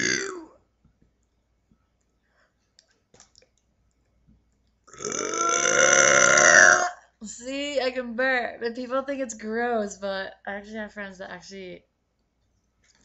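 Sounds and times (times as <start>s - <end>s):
woman burping: 0.0s - 0.6s, 4.9s - 7.0s.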